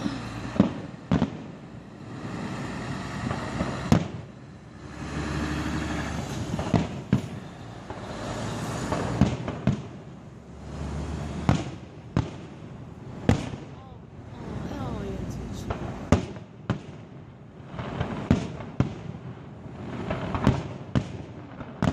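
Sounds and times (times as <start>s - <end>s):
rushing crackling fireworks: 0.0s - 21.9s
firework shells bursting: 6.2s - 10.2s.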